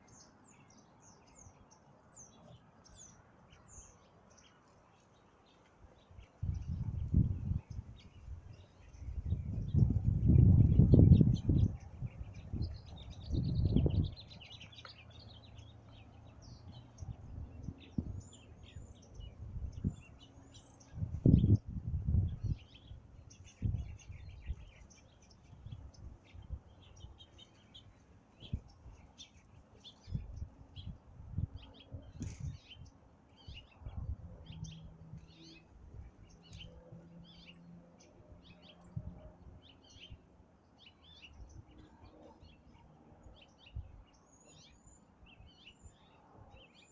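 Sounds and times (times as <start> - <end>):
small birds chirping: 0.0 - 46.9.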